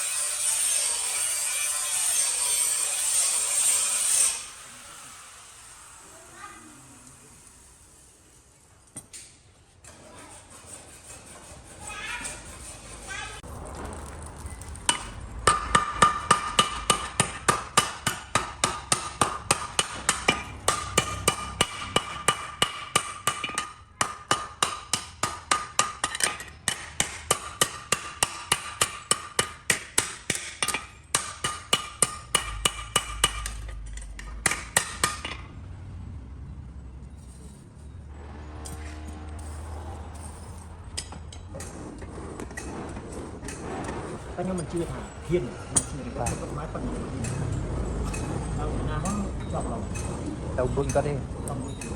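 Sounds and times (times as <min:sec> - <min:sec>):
hammer striking metal on anvil: 0:14.9 - 0:35.5, 0:49.0 - 0:51.9.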